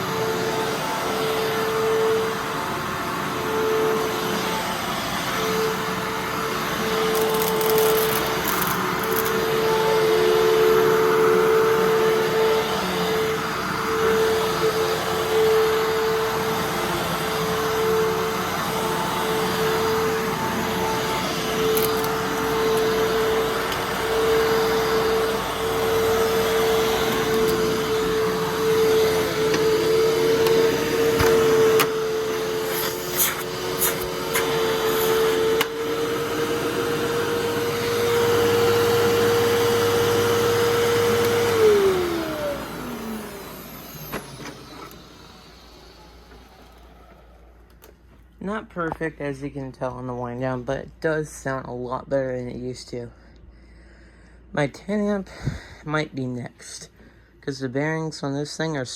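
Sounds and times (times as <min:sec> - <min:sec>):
vacuum cleaner whine: 0:00.0 - 0:50.8
motor winding down: 0:06.8 - 0:09.5, 0:18.8 - 0:24.2.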